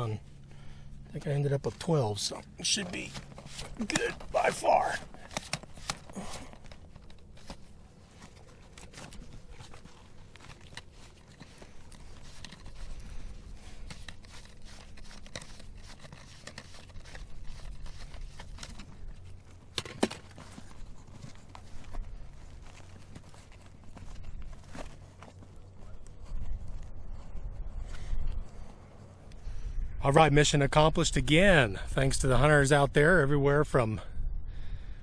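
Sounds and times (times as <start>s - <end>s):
rustling and crinkling: 0.0s - 29.4s
radio gear clicks: 2.6s - 12.9s.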